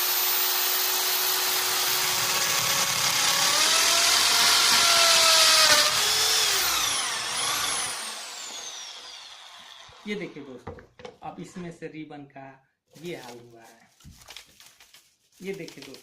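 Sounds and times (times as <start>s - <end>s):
electric drill whining: 0.0s - 10.1s.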